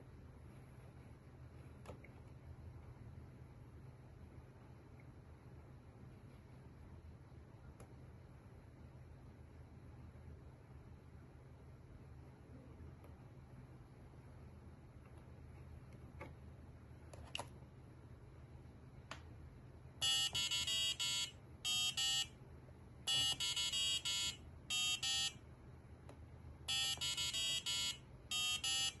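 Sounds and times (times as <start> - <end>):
piezo buzzer beeping tune: 20.0 - 22.3, 23.1 - 25.4, 26.7 - 29.0.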